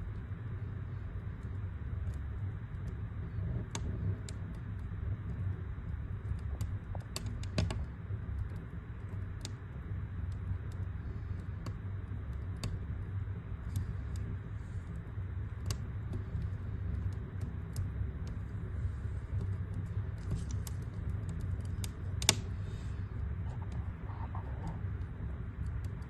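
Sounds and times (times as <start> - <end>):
low fire rumble: 0.0 - 26.0
wood fire crackling: 0.0 - 26.0.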